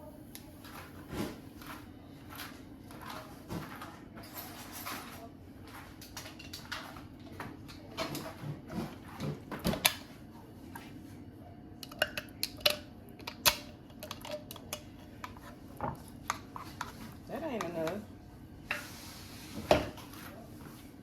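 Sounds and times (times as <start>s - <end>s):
utensils clicking on counter: 11.8s - 15.5s.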